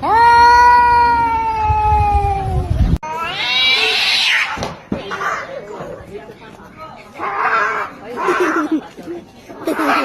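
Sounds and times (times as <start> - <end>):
cat yowling: 3.0 - 4.6.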